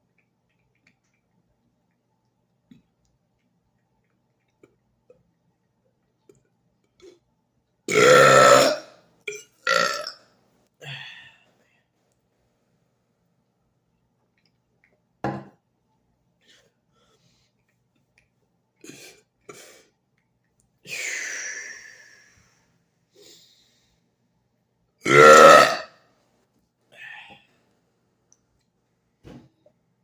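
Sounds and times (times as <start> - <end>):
man burping: 7.9 - 10.2, 25.0 - 25.9.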